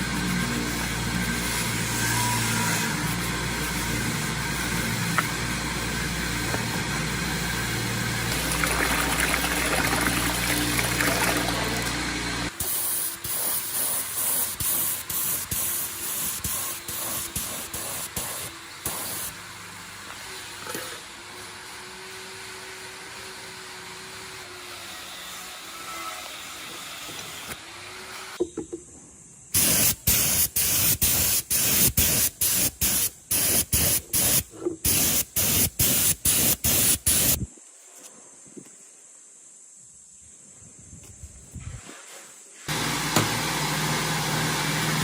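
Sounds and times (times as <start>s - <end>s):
hissing spray bursts: 0.0s - 19.4s, 29.5s - 37.5s.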